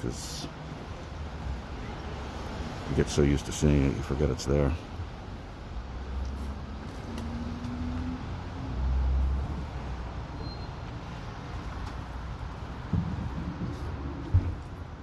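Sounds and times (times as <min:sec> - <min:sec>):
rumble of passing traffic: 0:00.0 - 0:15.0
heavy vehicle passing: 0:05.8 - 0:10.4.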